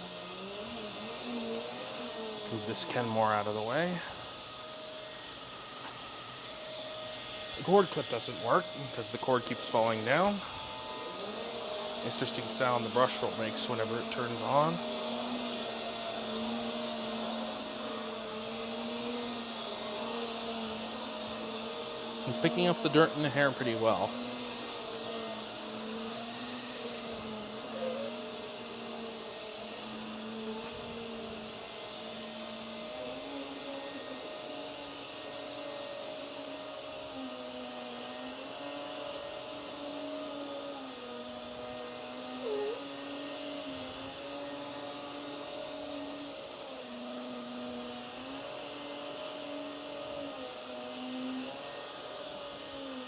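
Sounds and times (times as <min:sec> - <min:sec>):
vacuum cleaner motor hum: 0:00.0 - 0:53.0.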